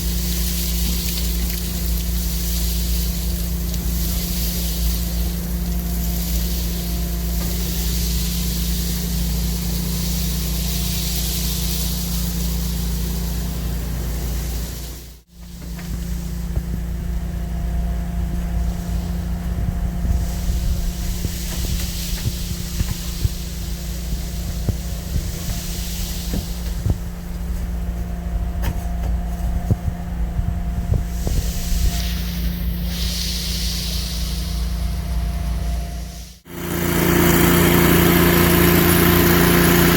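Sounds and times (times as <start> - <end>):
air rushing through hose: 0.0 - 27.9, 29.6 - 39.9
vacuum running with low drone: 0.0 - 39.9
vacuum motor hum: 35.0 - 39.9.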